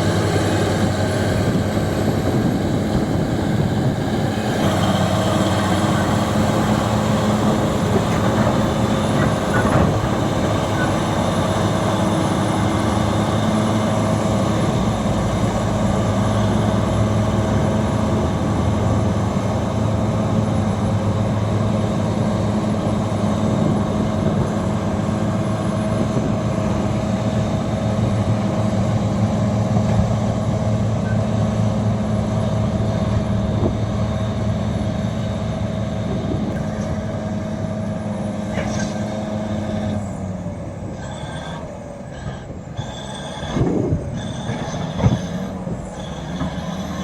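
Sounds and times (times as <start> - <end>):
bulldozer diesel engine droning: 0.0 - 47.0.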